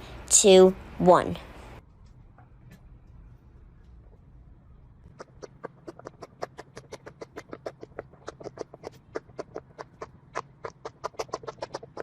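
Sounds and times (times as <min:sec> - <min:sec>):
fidget toy bubbles popping: 0:05.1 - 0:12.0.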